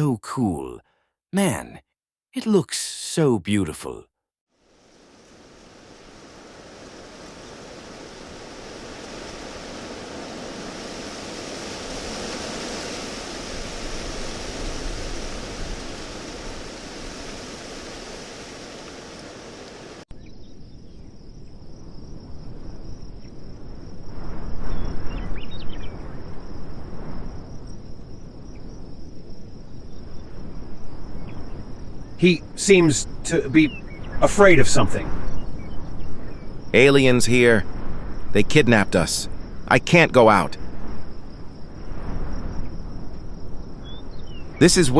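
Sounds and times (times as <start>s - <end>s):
hissing background: 0.0s - 1.8s, 2.4s - 4.1s, 4.7s - 20.0s, 21.9s - 44.9s
steady rushing noise: 4.7s - 20.0s.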